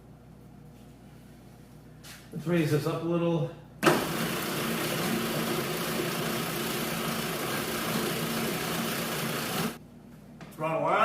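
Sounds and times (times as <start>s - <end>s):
sawmill gasoline engine running: 3.8s - 9.8s.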